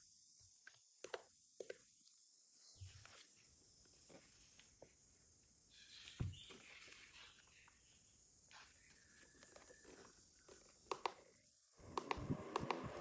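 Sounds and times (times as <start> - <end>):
spray fan hissing: 11.8 - 13.0.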